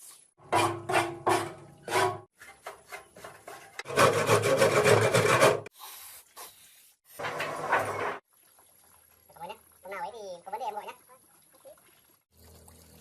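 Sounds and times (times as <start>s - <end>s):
rasping scraping strokes: 0.6s - 5.7s.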